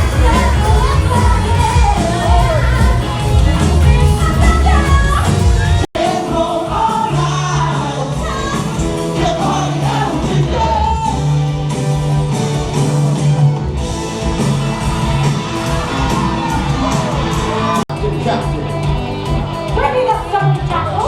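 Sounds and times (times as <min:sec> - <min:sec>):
people singing: 0:00.0 - 0:11.4
heavy bass: 0:00.0 - 0:21.0
live rock band playing: 0:00.0 - 0:21.0.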